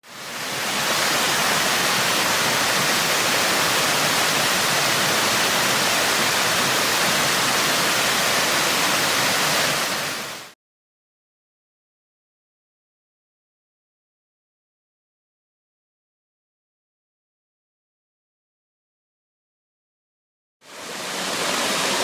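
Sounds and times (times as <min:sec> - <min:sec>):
waterfall rushing: 0:00.0 - 0:10.5, 0:20.6 - 0:22.0.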